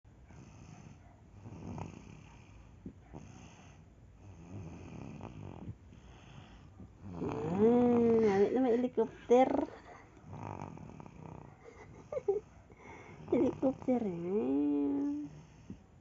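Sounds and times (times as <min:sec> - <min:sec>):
loud raspy snoring: 0:01.4 - 0:02.6, 0:03.2 - 0:08.5, 0:10.2 - 0:11.6.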